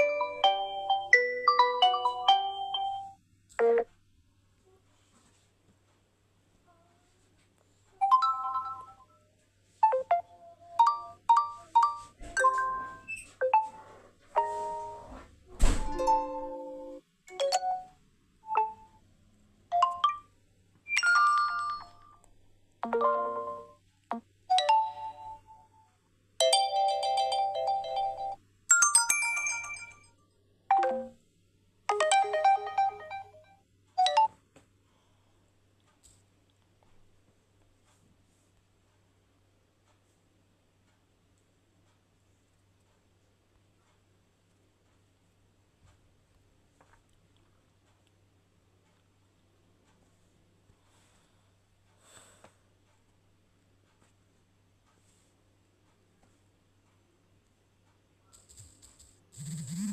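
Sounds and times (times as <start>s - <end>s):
phone notification chimes: 22.8s - 23.8s, 30.7s - 31.2s.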